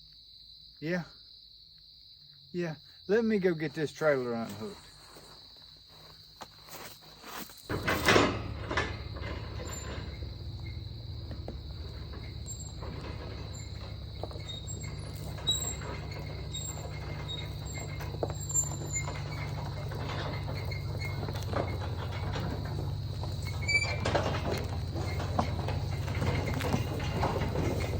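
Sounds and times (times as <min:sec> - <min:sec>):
crickets trilling: 0:00.0 - 0:27.9
engine starting and idling: 0:07.7 - 0:27.9.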